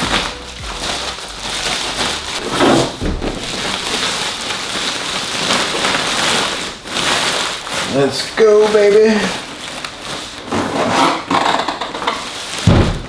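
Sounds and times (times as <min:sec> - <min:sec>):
packaging rustling and scraping: 0:00.0 - 0:13.0
dull thump: 0:02.4 - 0:03.8, 0:12.6 - 0:13.0.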